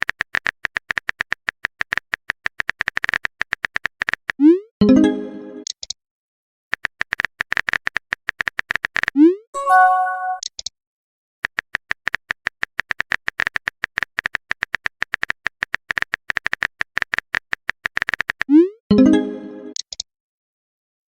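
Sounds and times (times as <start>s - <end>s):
brief chime: 9.6s - 10.4s
phone keyboard clicks: 11.4s - 18.5s.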